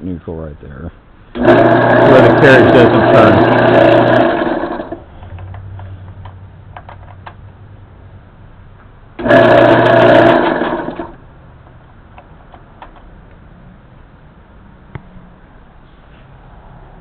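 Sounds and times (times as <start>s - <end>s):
metal lathe motor running: 1.4s - 5.0s, 9.2s - 11.1s.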